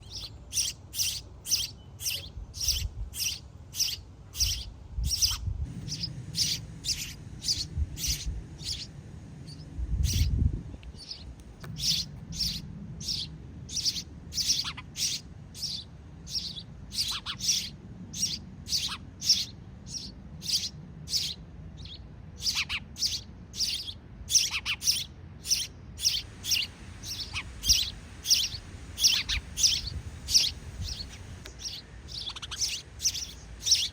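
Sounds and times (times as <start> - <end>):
sparrows chirping: 0.0 - 33.9
low rumble: 4.4 - 22.5, 26.3 - 33.8.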